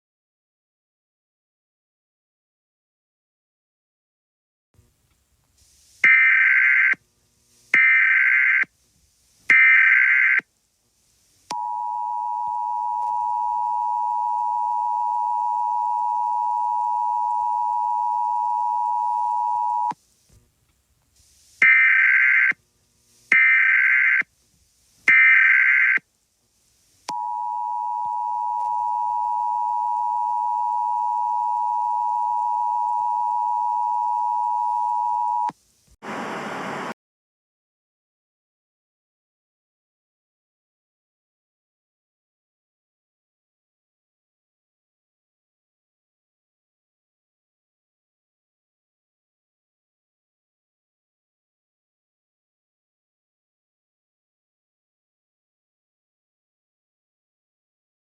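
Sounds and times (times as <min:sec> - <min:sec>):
digital data bursts: 0:06.1 - 0:07.0, 0:07.8 - 0:08.7, 0:09.5 - 0:10.4, 0:21.6 - 0:22.6, 0:23.3 - 0:24.3, 0:25.1 - 0:26.0.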